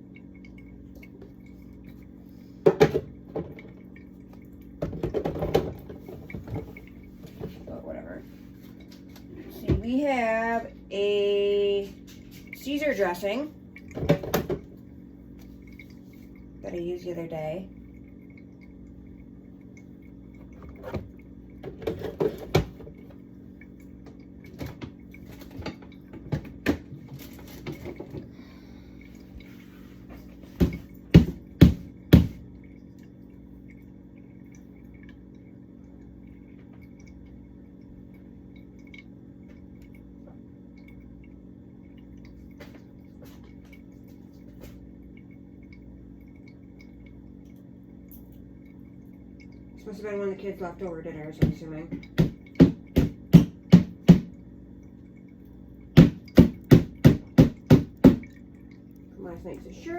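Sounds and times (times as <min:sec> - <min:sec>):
steady low hum: 0:00.0 - 0:59.9.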